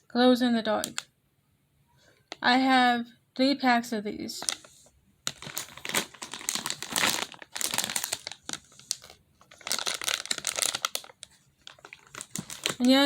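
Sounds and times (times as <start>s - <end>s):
plastic packaging crinkling: 0.8s - 1.0s, 4.4s - 13.0s.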